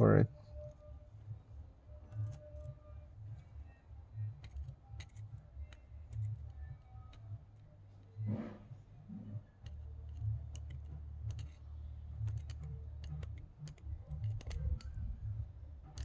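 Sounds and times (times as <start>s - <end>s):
low steady hum: 0.0s - 16.0s
small clicks and taps: 2.0s - 7.7s, 9.2s - 16.0s.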